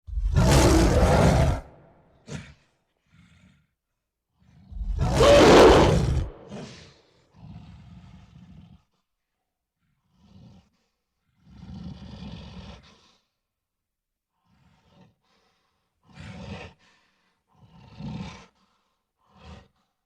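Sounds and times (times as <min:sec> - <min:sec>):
gorilla roaring: 0:00.1 - 0:02.5, 0:04.7 - 0:06.9
gorilla grunting: 0:04.7 - 0:06.9.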